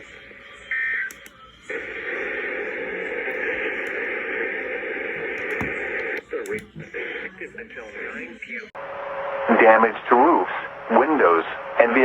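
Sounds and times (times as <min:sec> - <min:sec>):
radio static hiss: 0:00.0 - 0:08.7.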